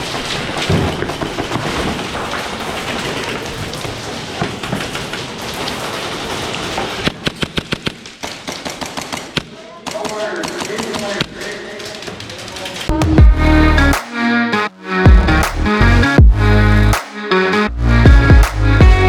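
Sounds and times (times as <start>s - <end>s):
airsoft gunfire: 0.0s - 11.4s
pellets striking hard surfaces: 0.0s - 12.2s.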